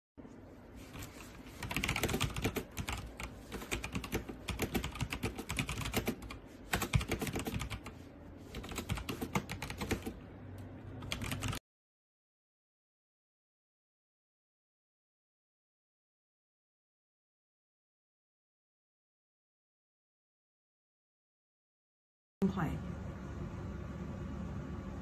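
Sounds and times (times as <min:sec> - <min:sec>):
mechanical keyboard typing: 0:00.9 - 0:10.2, 0:11.0 - 0:11.6.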